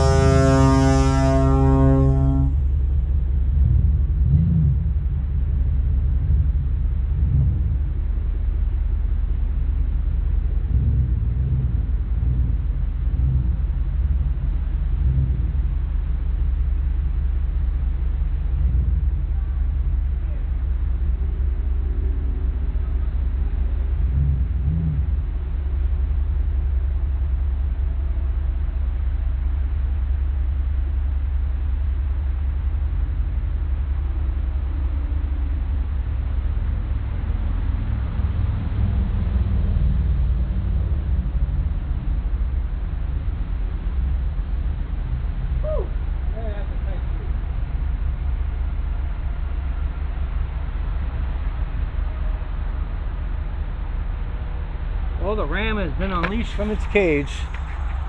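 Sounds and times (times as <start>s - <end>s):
truck engine rumbling: 0.0s - 4.0s, 56.0s - 58.0s.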